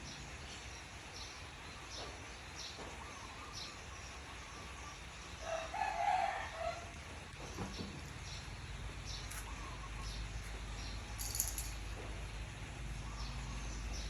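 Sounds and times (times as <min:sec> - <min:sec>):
rooster crowing: 0:05.4 - 0:07.0.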